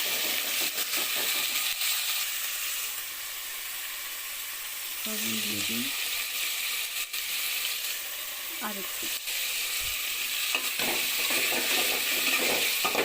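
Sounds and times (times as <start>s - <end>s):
food sizzling in hot oil: 0.0s - 13.0s
person's voice: 5.1s - 5.9s.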